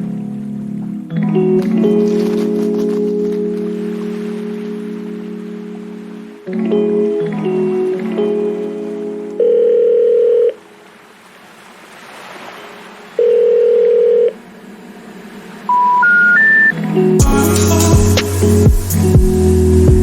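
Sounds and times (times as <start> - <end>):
electronic music notes: 0.0 - 9.5, 15.7 - 20.0
short rising beeps: 15.7 - 16.8
steady beep-like tone: 15.7 - 16.8.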